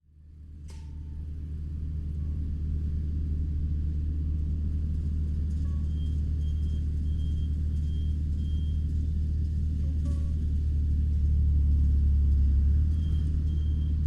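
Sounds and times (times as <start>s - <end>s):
tractor engine drone: 0.1s - 14.0s.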